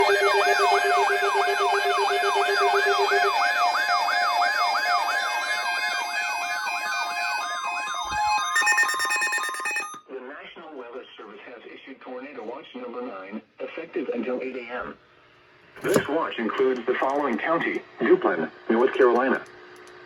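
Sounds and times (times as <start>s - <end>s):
buzzing alert tone: 0.0s - 10.0s
siren-like sweeping tone: 0.0s - 10.0s.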